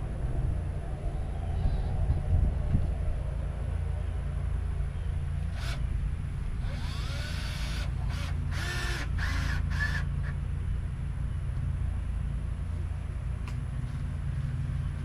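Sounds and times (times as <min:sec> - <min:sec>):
cordless drill running: 0:06.6 - 0:10.1.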